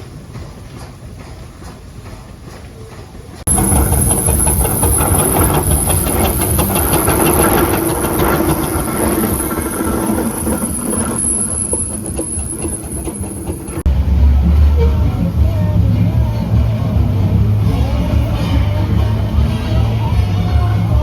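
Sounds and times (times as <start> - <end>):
steam engine hissing: 1.0 - 21.0
high-pitched squeal: 3.5 - 13.9
low rumble: 3.5 - 21.0.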